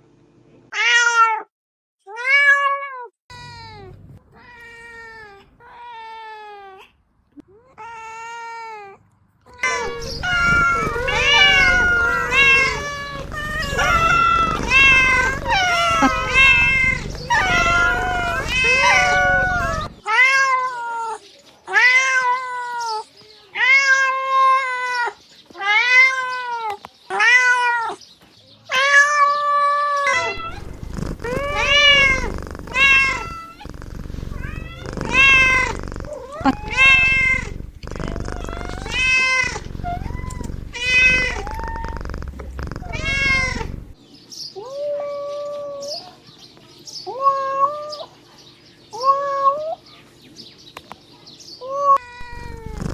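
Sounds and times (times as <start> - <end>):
kittens meowing: 9.6 - 28.0, 28.7 - 44.0, 44.6 - 46.2, 47.0 - 48.2, 48.9 - 49.8, 51.6 - 52.9.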